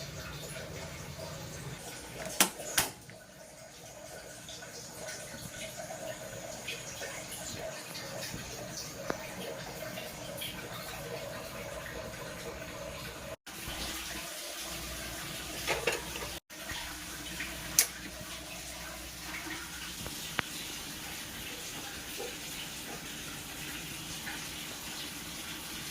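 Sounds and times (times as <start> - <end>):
running water: 0.0 - 25.9.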